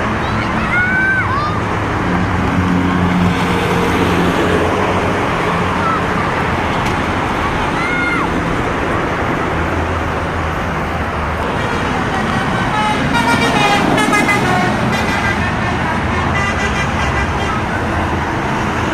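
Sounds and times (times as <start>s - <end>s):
road traffic and engine noise: 0.0s - 18.9s
bus horn melody: 11.4s - 17.9s.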